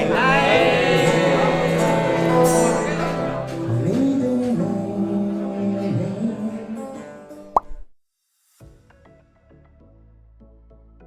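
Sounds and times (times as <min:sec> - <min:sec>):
man singing: 0:00.0 - 0:07.3
held instrumental notes: 0:00.0 - 0:07.5.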